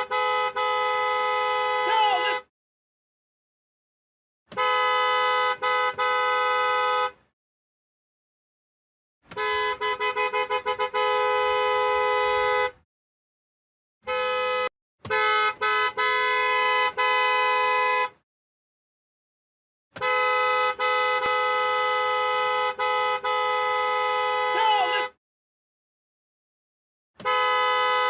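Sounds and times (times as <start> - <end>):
car horn honking: 0.0 - 2.5, 4.5 - 7.3, 9.3 - 12.8, 14.0 - 18.2, 19.9 - 25.2, 27.2 - 28.0.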